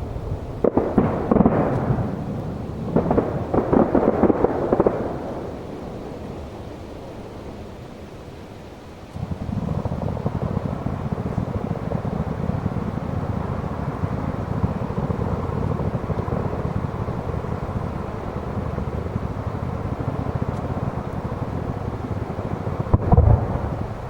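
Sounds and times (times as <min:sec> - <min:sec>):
firework shell bursts and crackles: 0:00.0 - 0:08.0, 0:22.7 - 0:24.0
loud firework boom: 0:22.9 - 0:24.0.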